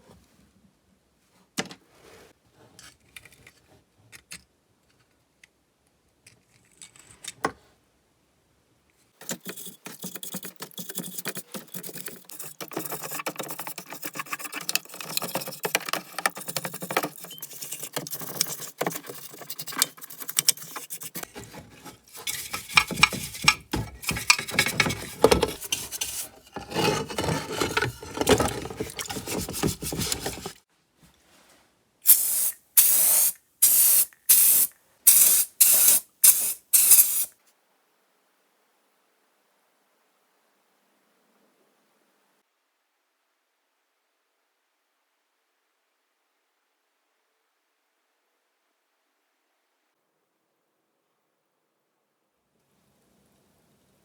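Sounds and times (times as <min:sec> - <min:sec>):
clicking and scraping of parts: 0:09.2 - 0:30.6, 0:32.1 - 0:37.3.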